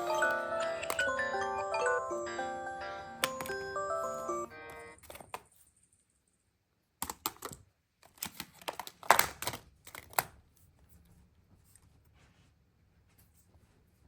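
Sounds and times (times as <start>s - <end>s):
smartphones clicking and clattering: 0.0s - 1.5s, 3.2s - 3.8s, 7.0s - 10.4s
phone alarm melody: 0.0s - 5.0s.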